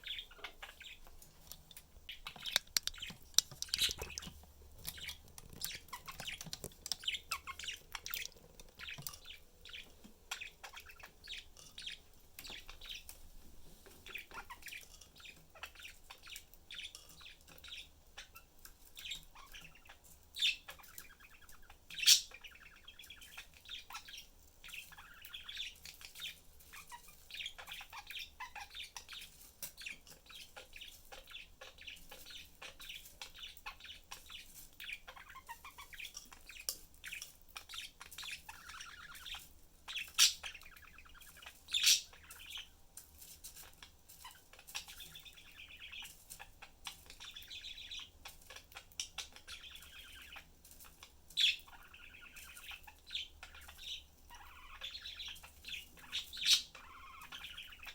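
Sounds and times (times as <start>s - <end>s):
budgerigars chattering: 0.0s - 1.1s, 2.1s - 13.1s, 14.0s - 42.7s, 43.7s - 57.9s
sharp bird calls: 2.1s - 13.1s, 34.9s - 42.7s, 51.4s - 57.9s.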